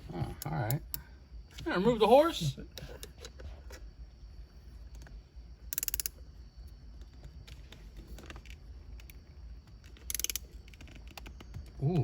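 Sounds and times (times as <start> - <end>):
wrench ratcheting: 5.7 - 6.2, 9.9 - 11.2.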